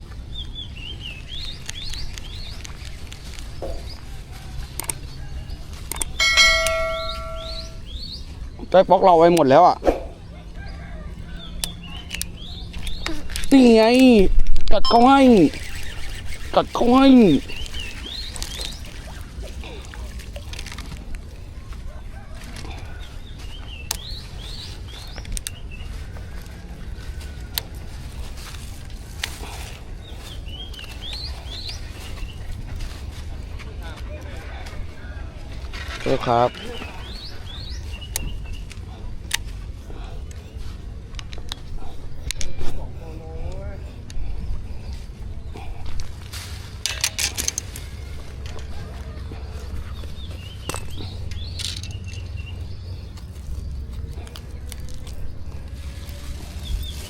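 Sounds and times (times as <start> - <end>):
sharp clicks: 5.8 - 7.7
small bird chirping: 5.9 - 8.8, 14.8 - 19.5
bird chirping: 5.9 - 9.2, 14.8 - 20.1, 47.7 - 55.6.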